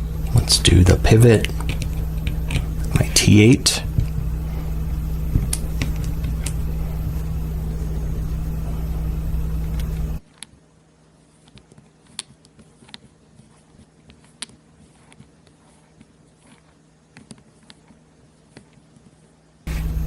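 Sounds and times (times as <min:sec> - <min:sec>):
loud motor hum: 0:00.0 - 0:10.2, 0:19.7 - 0:20.0.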